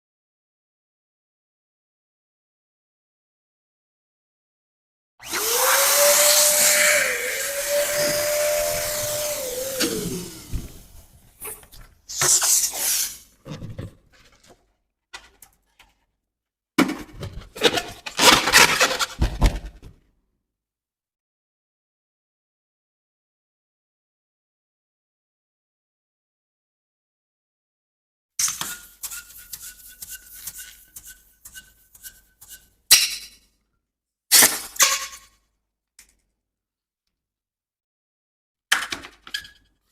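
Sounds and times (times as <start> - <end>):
electric balloon pump humming: 5.2 - 11.1.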